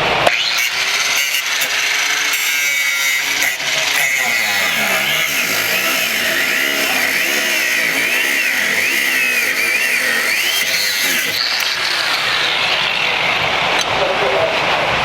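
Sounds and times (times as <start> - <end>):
angle grinder cutting metal: 0.0 - 14.0.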